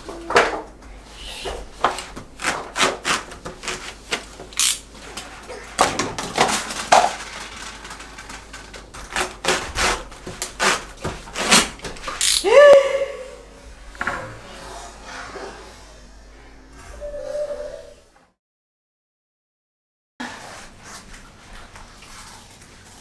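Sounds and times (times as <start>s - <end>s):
foam mat pieces knocking and rubbing: 1.5s - 12.6s
toddler vocal sound: 12.2s - 13.5s.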